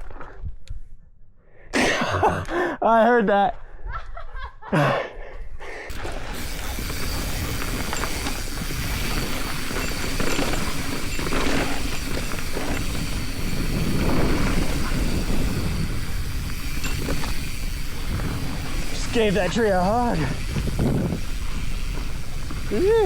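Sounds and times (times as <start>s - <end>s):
bike rattling over dirt: 5.9s - 23.0s
wind rushing over microphone: 6.4s - 23.0s.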